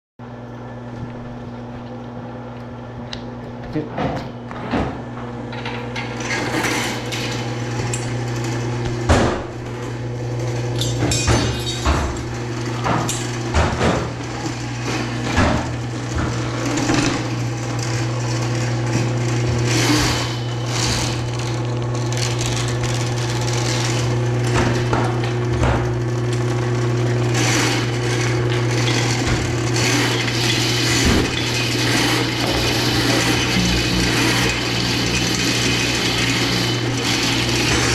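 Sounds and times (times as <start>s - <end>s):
machine motor humming: 0.8s - 37.9s
cable knocking in drain: 28.5s - 37.9s.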